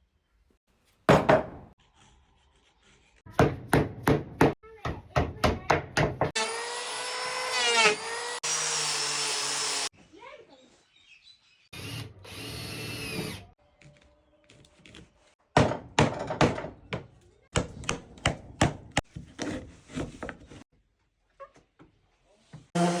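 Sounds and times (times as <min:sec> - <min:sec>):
knocks on wood: 0:01.1 - 0:01.7
power tool running: 0:06.4 - 0:09.9, 0:22.8 - 0:23.0.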